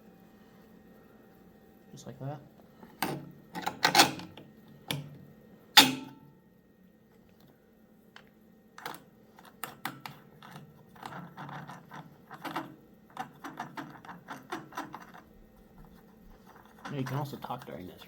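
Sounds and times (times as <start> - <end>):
tools clicking and knocking: 2.9 - 5.1, 5.8 - 6.2, 8.2 - 15.3.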